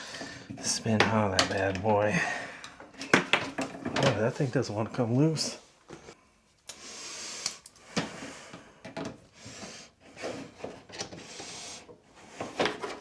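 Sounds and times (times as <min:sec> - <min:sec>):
rubbing and scraping plastic part: 0:09.4 - 0:13.0.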